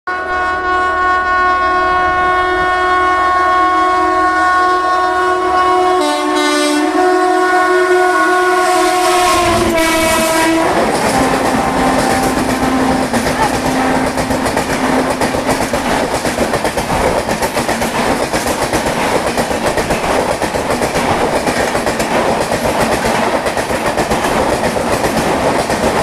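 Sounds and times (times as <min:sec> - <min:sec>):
locomotive two-tone horn: 0:00.1 - 0:15.6
passing train rumble and clatter: 0:00.1 - 0:26.0.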